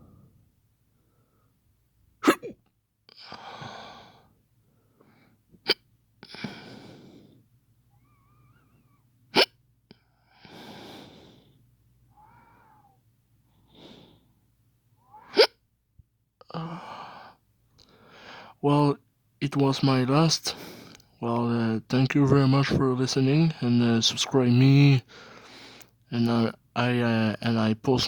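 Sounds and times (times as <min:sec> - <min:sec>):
man making fake hiccups: 0:02.2 - 0:02.7, 0:05.6 - 0:06.4, 0:09.3 - 0:09.6, 0:15.1 - 0:15.6
breathy breaths: 0:03.1 - 0:05.5, 0:06.2 - 0:09.1, 0:10.0 - 0:15.4, 0:16.5 - 0:18.6, 0:20.5 - 0:21.2, 0:25.0 - 0:26.0.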